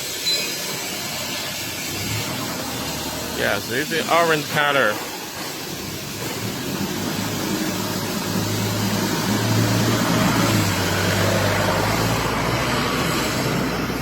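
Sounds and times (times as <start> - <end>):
engine humming: 1.6 - 14.0.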